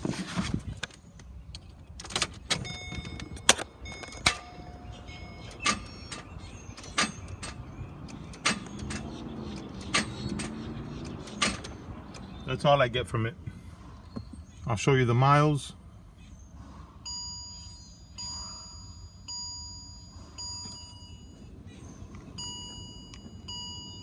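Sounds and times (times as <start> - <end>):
starter ticking: 2.1 - 12.5.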